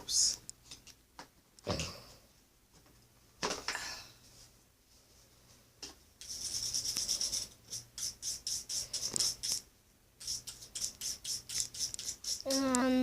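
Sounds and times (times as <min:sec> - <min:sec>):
rapid rubbing strokes: 0:06.2 - 0:12.8.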